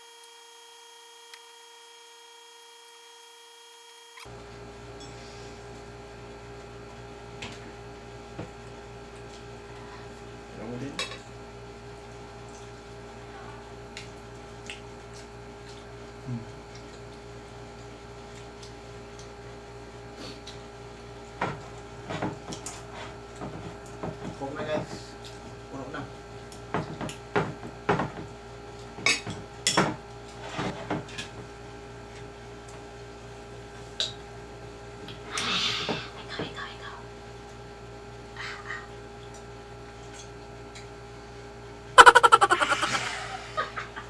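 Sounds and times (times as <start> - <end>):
steady background hum: 42.0 - 44.0.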